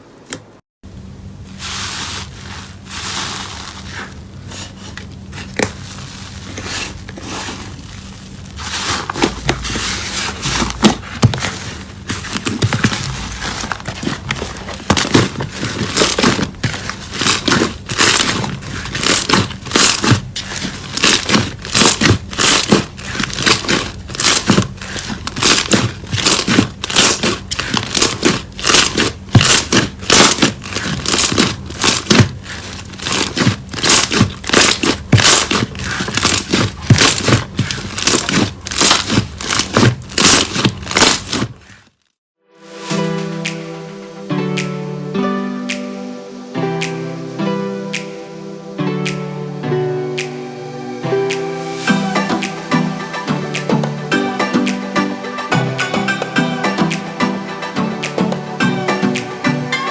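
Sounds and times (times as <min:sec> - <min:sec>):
slime squeezed crackling and popping: 0:13.0 - 0:42.0.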